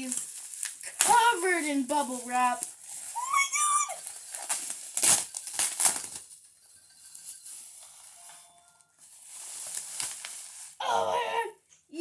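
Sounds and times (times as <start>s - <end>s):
plastic crackles: 0.0s - 10.9s
bubble wrap crinkling: 0.0s - 11.0s.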